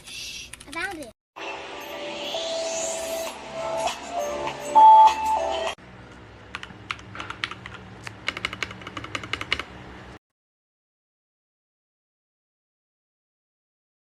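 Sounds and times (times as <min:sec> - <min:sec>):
short music: 0:01.4 - 0:05.8.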